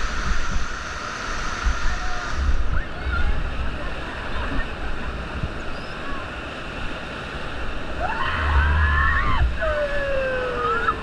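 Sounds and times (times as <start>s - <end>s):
whitewater rushing: 0.0s - 11.0s
rafters yelling and whooping: 8.0s - 11.0s.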